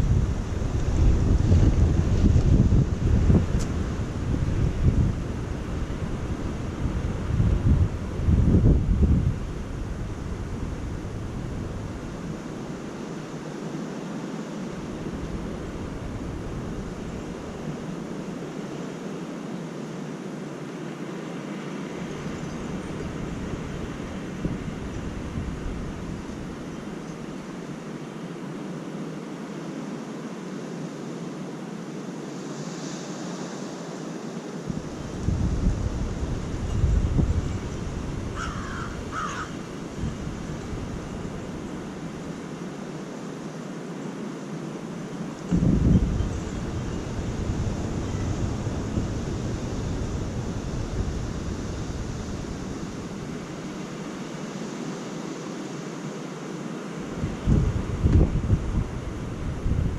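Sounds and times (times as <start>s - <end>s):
wind buffeting microphone: 0.0s - 12.9s, 34.7s - 42.0s, 45.4s - 54.1s, 57.1s - 59.9s
gusty wind rushing: 0.0s - 13.4s, 34.6s - 42.4s, 45.4s - 54.6s, 57.0s - 59.9s.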